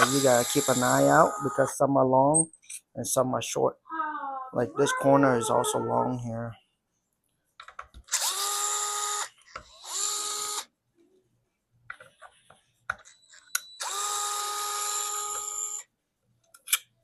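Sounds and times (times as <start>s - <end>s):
electric screwdriver whining: 0.0s - 1.4s, 8.1s - 10.7s, 13.8s - 15.8s.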